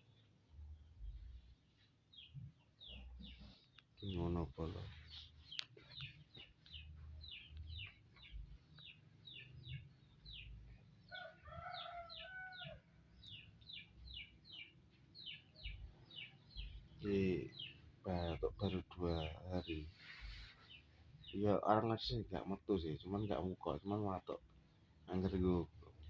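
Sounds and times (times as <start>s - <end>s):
faint bird chirping: 0.0s - 26.0s
rooster crowing: 11.1s - 13.0s.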